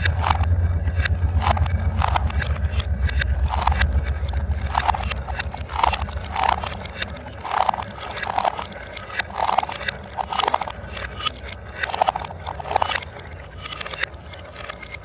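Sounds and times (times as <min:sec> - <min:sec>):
marbles rattling clacks: 0:00.0 - 0:15.0
marbles rolling on wooden track: 0:00.0 - 0:15.0.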